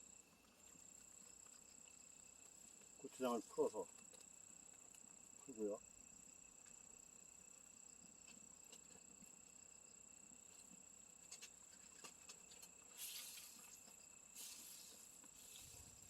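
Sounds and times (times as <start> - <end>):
insects trilling: 0.0 - 16.0
brief hisses: 13.0 - 13.6, 14.4 - 15.8.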